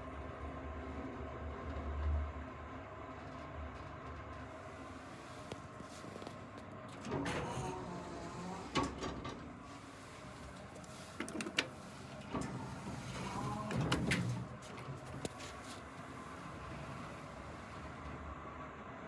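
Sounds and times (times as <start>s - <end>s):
elevator clicks and clunks: 7.0s - 15.3s
elevator hum: 7.0s - 18.9s
elevator rattling: 11.4s - 14.7s.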